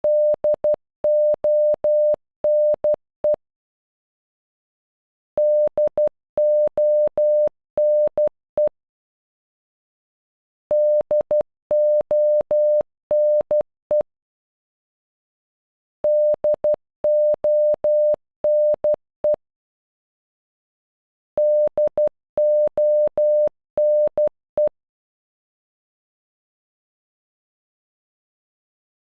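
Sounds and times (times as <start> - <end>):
morse code beeps: 0.1 - 3.0, 5.4 - 8.7, 10.8 - 14.0, 16.1 - 19.4, 21.4 - 24.7.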